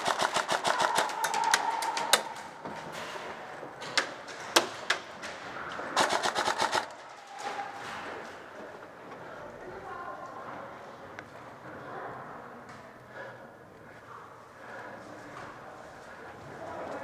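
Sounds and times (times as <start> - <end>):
airsoft guns firing: 0.0 - 2.3, 6.0 - 7.0.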